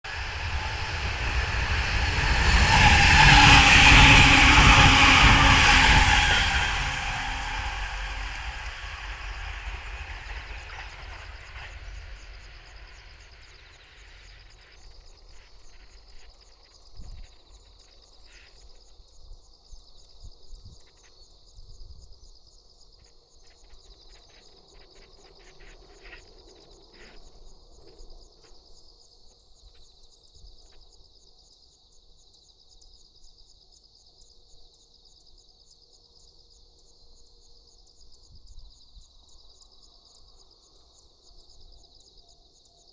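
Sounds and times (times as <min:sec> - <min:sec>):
train passing: 0:00.0 - 0:14.9
insects chorus: 0:00.0 - 0:42.9.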